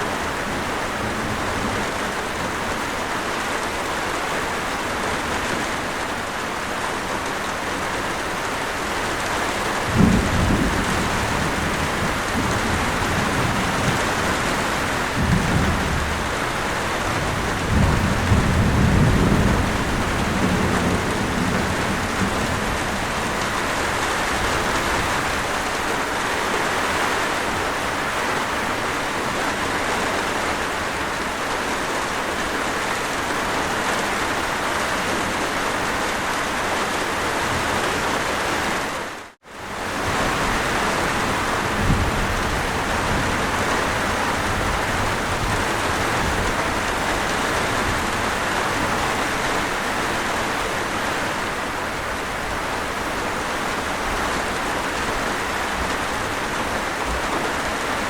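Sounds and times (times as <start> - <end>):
steady rain falling: 0.0 - 58.0
rolling thunder rumbles: 9.3 - 25.8, 39.7 - 50.8
thunder clap: 9.7 - 25.6, 39.9 - 49.3.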